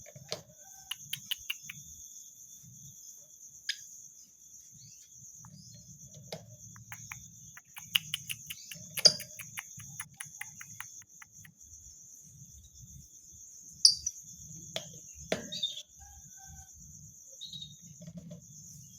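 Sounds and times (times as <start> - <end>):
lovebird chirping: 0.9 - 1.9, 6.6 - 11.6, 13.8 - 14.2.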